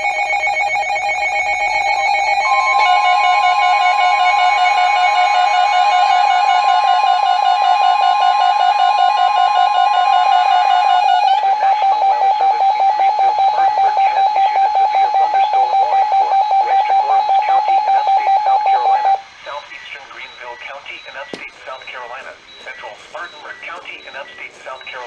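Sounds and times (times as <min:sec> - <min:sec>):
rapid beeping alarm: 0:00.0 - 0:25.0
steady high alarm tone: 0:00.0 - 0:25.0
faint broadcast voice: 0:11.4 - 0:25.0.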